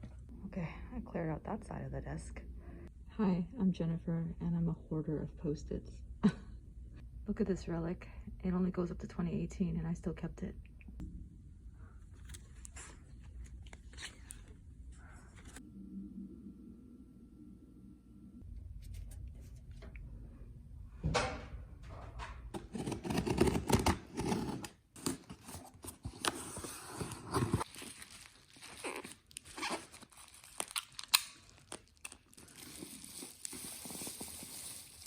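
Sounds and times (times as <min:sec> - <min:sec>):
paper rustling and crinkling: 0:22.6 - 0:35.0.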